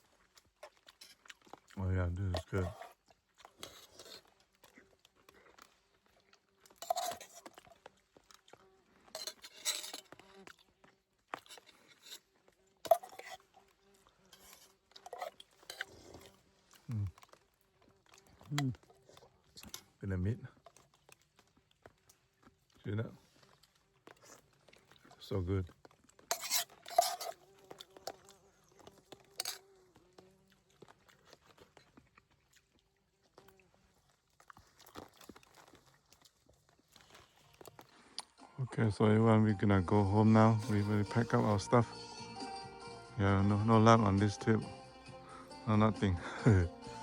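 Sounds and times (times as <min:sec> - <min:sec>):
person chewing food: 0:00.0 - 0:38.6, 0:44.7 - 0:47.0
dishes and utensils clinking: 0:06.8 - 0:07.4, 0:09.2 - 0:10.0, 0:12.9 - 0:13.4, 0:26.3 - 0:27.3.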